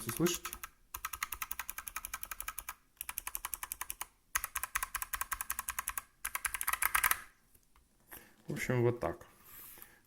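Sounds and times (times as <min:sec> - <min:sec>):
mechanical keyboard clicks: 0:00.0 - 0:07.3.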